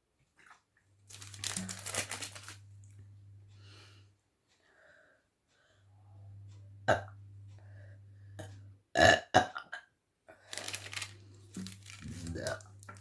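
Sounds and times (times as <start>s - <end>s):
woman burping: 6.9s - 7.2s, 9.0s - 9.9s.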